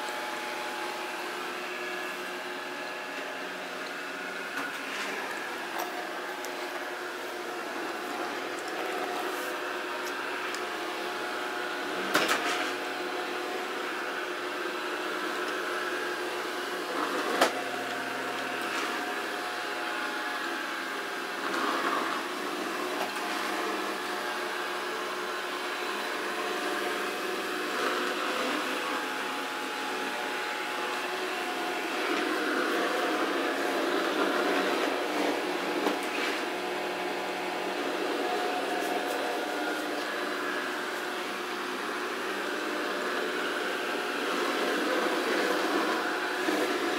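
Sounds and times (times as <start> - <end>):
robot vacuum motor humming: 13.4 - 46.9.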